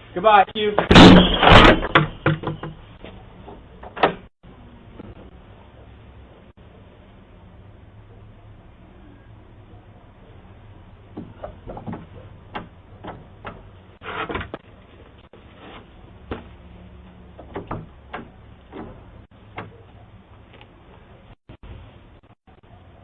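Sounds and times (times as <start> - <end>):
knocks and clicks: 11.1 - 13.7.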